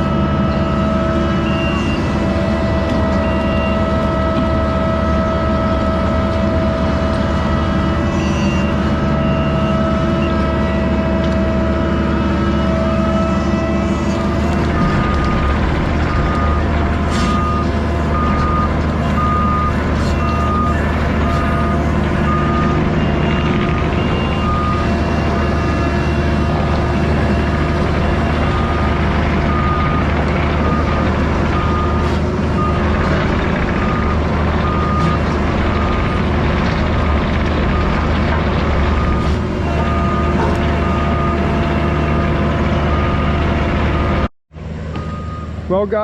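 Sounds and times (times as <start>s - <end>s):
reversing alarm beeping: 0.0s - 36.3s, 38.8s - 44.3s, 45.0s - 45.6s
diesel engine running: 0.0s - 46.0s.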